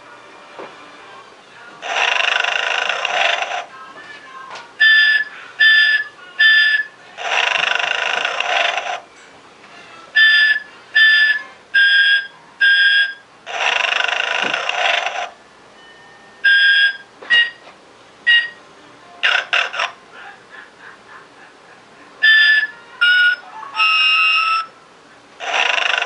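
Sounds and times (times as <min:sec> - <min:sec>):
decoration playing recorded snoring: 0:01.8 - 0:03.7, 0:07.2 - 0:09.0, 0:13.5 - 0:15.3, 0:25.4 - 0:26.0.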